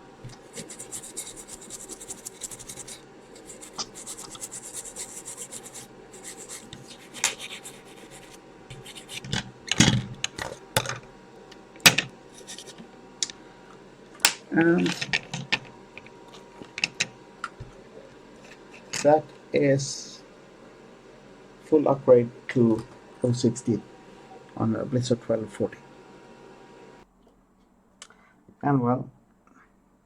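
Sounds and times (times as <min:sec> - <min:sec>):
scratchy scrubbing of circuit board: 0:00.3 - 0:09.5.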